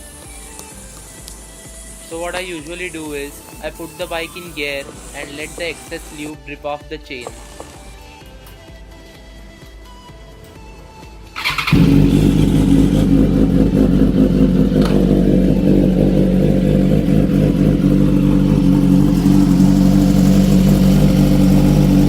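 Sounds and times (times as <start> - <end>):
motorcycle engine running: 11.4 - 22.0.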